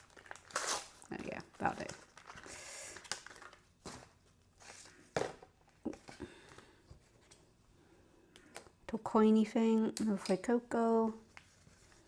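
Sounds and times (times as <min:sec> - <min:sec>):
plastic packaging crinkling: 0:00.0 - 0:05.1.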